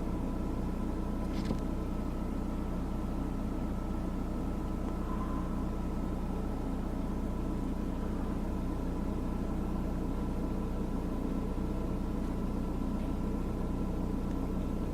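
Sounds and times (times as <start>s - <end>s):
low engine-like hum: 0.0s - 14.9s
faint high tones: 4.9s - 6.4s.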